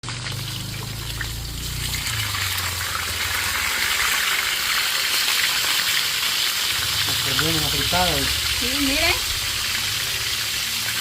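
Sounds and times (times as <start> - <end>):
fish sizzling in hot oil: 0.0 - 11.0
low hum: 6.7 - 11.0.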